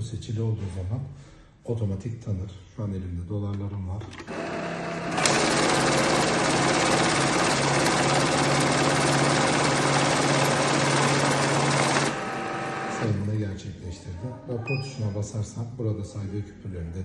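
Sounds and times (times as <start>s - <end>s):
banknotes fluttering through machine: 4.3s - 13.1s
motor hum: 4.3s - 13.2s.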